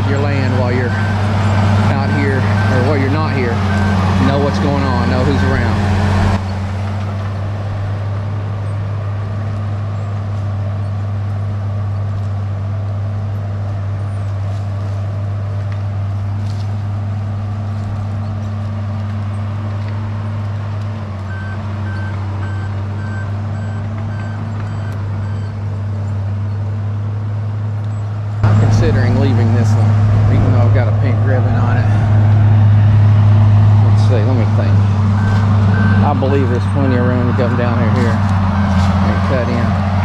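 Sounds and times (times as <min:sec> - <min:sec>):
backup alarm beeping: 0:00.0 - 0:06.0, 0:21.3 - 0:25.6, 0:35.2 - 0:39.6
bulldozer diesel engine running: 0:00.0 - 0:40.0.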